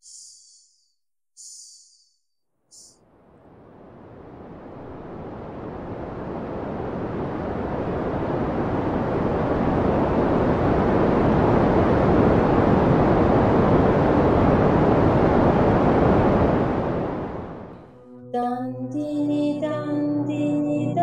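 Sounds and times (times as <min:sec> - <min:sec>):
steady rushing noise: 0:03.1 - 0:17.9.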